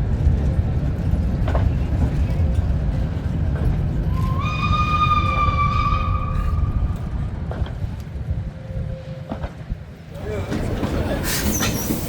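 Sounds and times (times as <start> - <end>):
low rumble of train running: 0.0 - 12.0
train whistle: 4.1 - 6.9.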